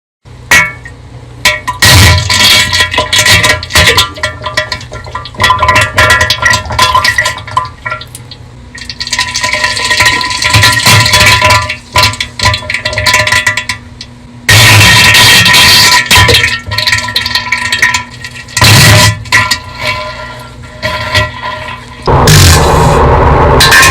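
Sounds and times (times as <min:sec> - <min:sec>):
bass-boosted fart-like bursts: 0:14.5 - 0:16.4, 0:18.6 - 0:23.9.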